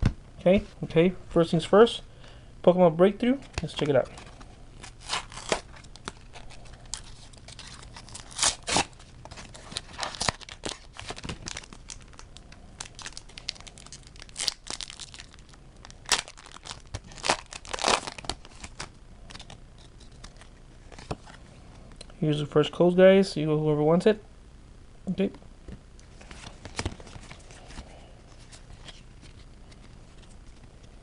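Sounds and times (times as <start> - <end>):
wrapper crinkling and rustling: 3.6 - 21.4
foil pack tearing: 4.8 - 19.6.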